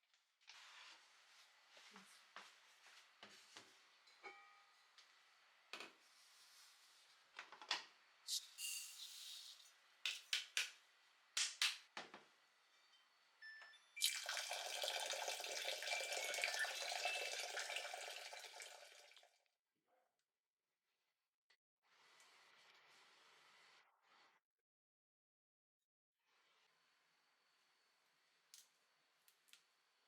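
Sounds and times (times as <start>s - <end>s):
kitchen tap running: 14.0s - 19.2s.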